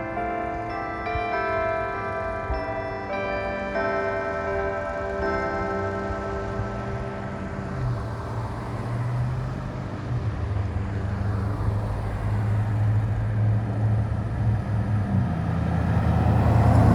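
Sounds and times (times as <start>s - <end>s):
road noise: 0.0s - 16.9s
vehicle engine hum: 6.6s - 16.9s.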